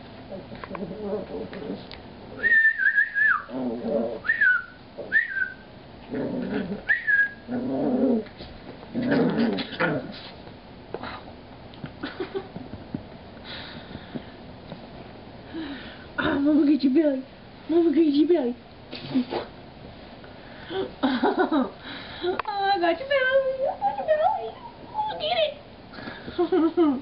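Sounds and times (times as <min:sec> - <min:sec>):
dog grumbling: 0:00.3 - 0:02.0, 0:03.5 - 0:04.3, 0:06.0 - 0:08.3, 0:08.9 - 0:10.3.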